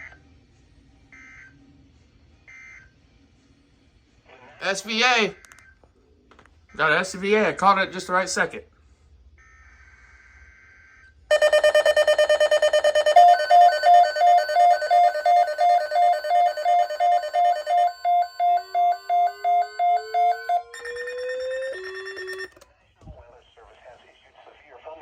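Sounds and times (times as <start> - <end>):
pulsing alert tone: 11.3 - 22.6
rapid electronic beeping: 11.3 - 22.6.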